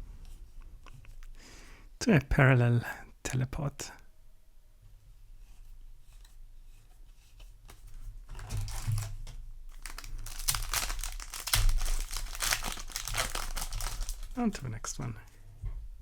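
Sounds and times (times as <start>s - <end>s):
foil wrapper crinkling and tearing: 7.7s - 15.0s.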